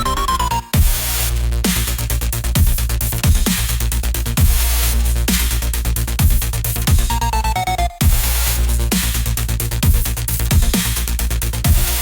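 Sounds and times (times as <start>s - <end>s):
electronic dance music: 0.0s - 2.0s, 6.2s - 12.0s.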